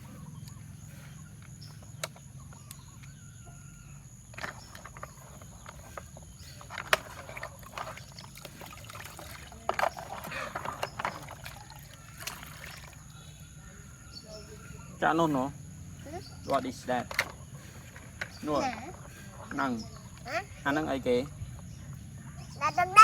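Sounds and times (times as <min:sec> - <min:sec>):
water splashing: 0:06.9 - 0:13.2.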